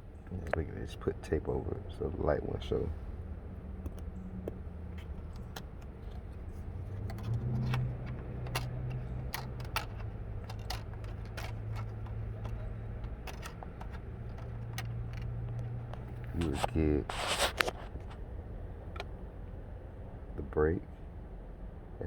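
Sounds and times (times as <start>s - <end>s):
light clicks and rattles: 3.9s - 18.2s.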